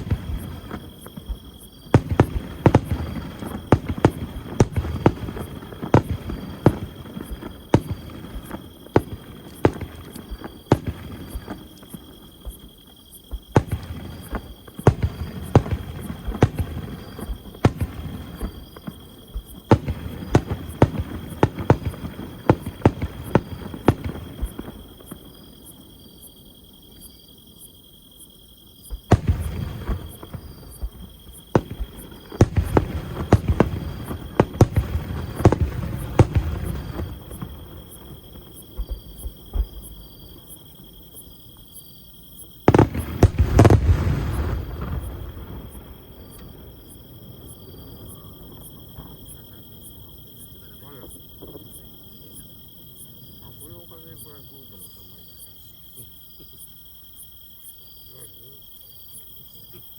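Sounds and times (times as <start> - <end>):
fireworks bangs: 0.0 - 26.3, 28.8 - 41.7, 42.5 - 55.2
low rumble of echoing booms: 28.9 - 40.5, 42.7 - 54.4.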